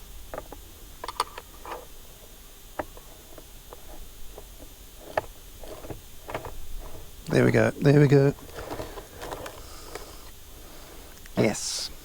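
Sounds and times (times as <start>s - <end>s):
plastic parts clicking together: 0.3s - 1.9s, 2.8s - 10.4s.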